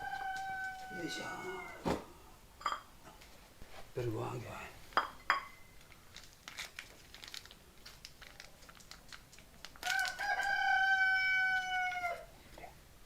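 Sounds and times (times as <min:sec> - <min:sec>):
rooster crowing: 0:00.0 - 0:01.8, 0:09.8 - 0:12.3.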